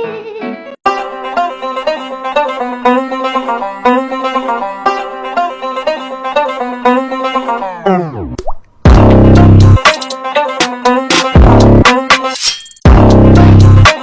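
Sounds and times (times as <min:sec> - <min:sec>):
plucked string tune: 0:00.9 - 0:12.1
steady beat: 0:08.9 - 0:10.2, 0:11.1 - 0:14.0.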